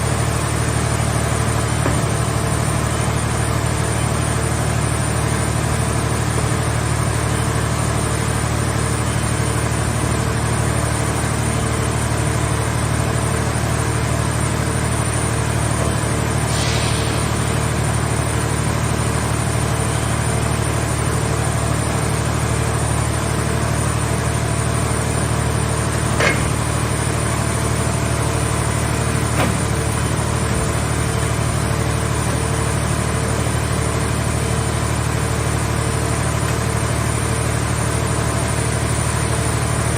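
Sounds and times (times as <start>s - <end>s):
baler engine humming: 13.1s - 39.9s
brief hiss: 16.4s - 18.0s
sharp knocks: 26.2s - 26.6s.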